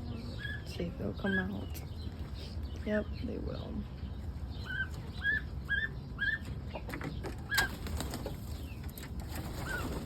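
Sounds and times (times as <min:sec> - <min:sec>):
chickens squawking: 0:00.0 - 0:01.8, 0:04.3 - 0:10.0.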